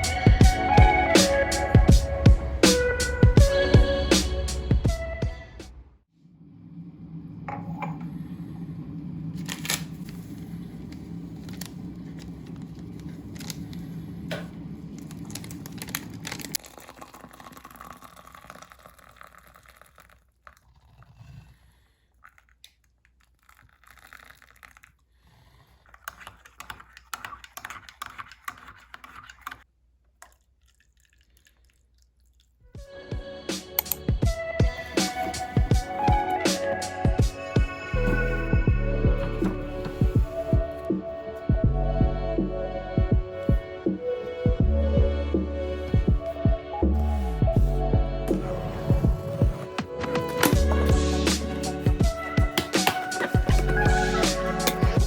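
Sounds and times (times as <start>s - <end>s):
packaging tearing and crinkling: 9.4s - 10.2s, 14.9s - 20.2s, 22.4s - 24.9s.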